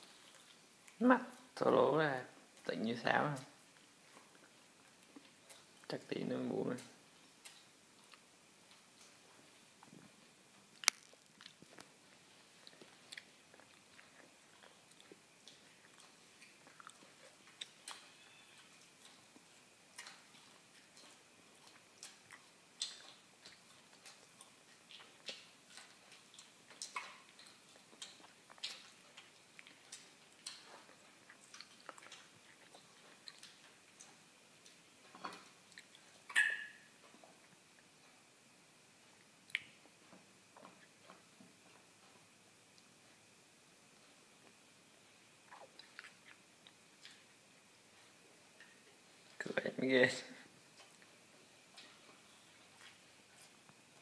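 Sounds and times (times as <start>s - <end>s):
sharp hiccup: 36.3s - 36.9s.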